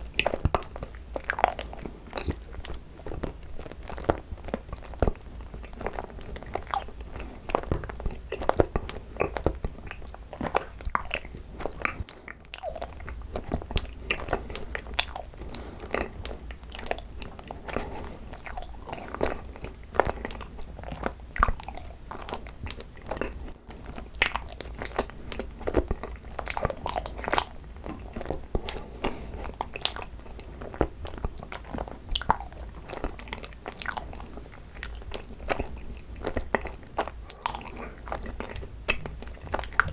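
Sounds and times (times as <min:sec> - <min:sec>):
chewing rice cake: 0:00.0 - 0:39.9
mouth clicks: 0:38.9 - 0:39.9.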